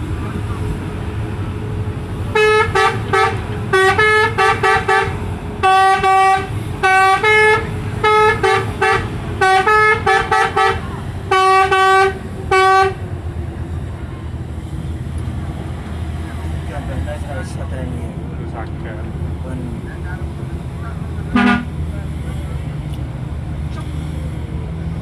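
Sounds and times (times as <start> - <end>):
low engine rumble: 0.0 - 25.0
musical bus horn tune: 2.3 - 13.0, 21.3 - 21.8.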